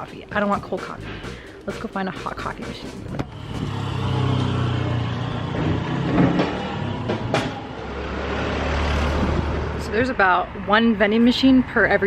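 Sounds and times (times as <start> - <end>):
street traffic: 0.0 - 12.0
vehicle engine humming: 0.0 - 12.0.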